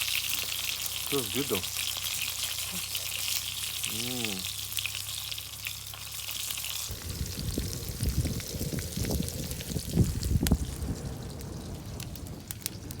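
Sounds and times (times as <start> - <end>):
food sizzling in a pan: 0.0 - 11.5
low rumbling noise: 6.9 - 13.0.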